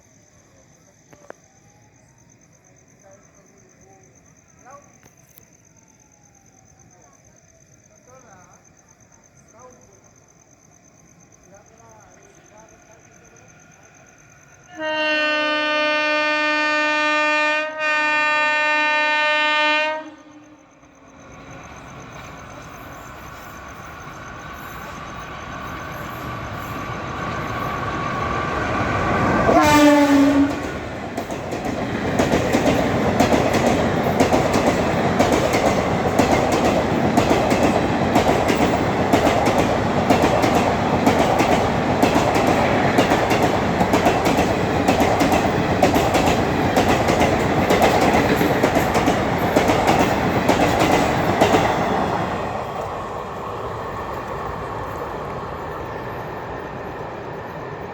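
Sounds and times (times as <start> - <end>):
train coaches rumbling past: 6.9 - 57.9
locomotive horn: 14.7 - 20.7, 29.4 - 30.8
wheels clickety-clack on rail joints: 21.0 - 57.9.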